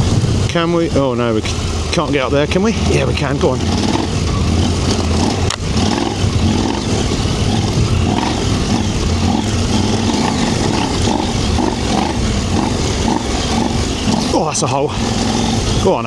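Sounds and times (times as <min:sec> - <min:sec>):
motorcycle engine revving: 0:00.0 - 0:16.0
wind on helmet microphone: 0:00.0 - 0:16.0.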